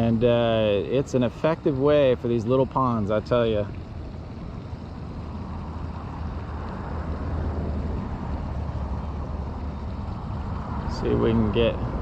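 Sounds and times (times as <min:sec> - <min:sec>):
outdoor rushing noise with low rumble: 0:00.0 - 0:12.0.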